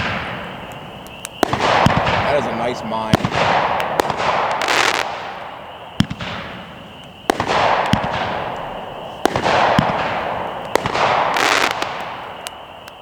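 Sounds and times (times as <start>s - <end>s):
firework bangs: 0.0s - 13.0s
firework crackling burst: 0.0s - 13.0s
firework hiss: 0.0s - 13.0s.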